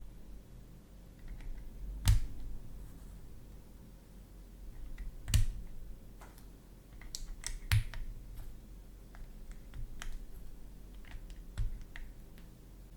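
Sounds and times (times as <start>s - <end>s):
loud keystrokes: 1.2s - 2.6s, 4.8s - 5.9s, 7.0s - 8.5s
mechanical keyboard typing: 1.2s - 2.6s, 4.7s - 5.9s, 7.0s - 8.5s, 9.1s - 12.5s.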